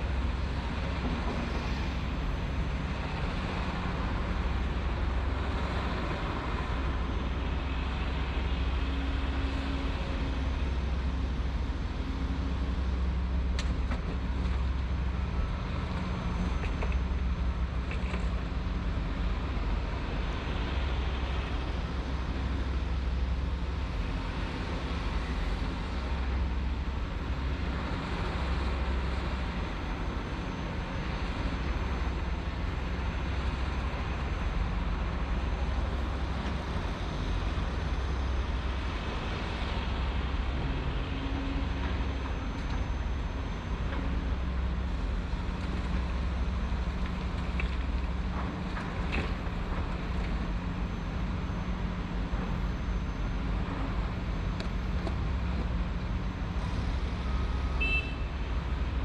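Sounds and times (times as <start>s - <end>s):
construction machinery engine rumble: 30.8s - 59.0s.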